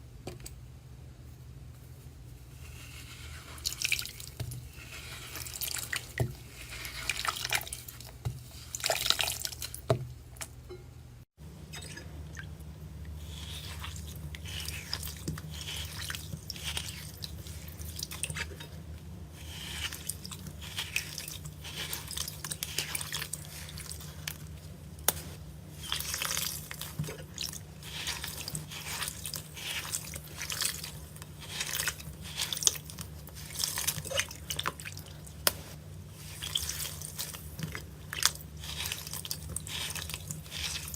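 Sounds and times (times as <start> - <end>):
slime squishing by hand: 13.1 - 40.9.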